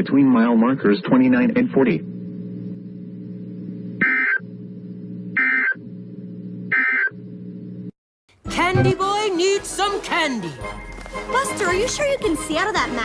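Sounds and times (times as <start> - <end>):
steady low hum: 0.0 - 8.0.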